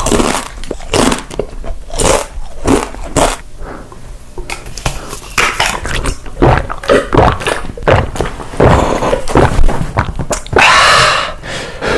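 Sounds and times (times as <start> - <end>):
loud chewing and crunching: 0.0 - 3.5.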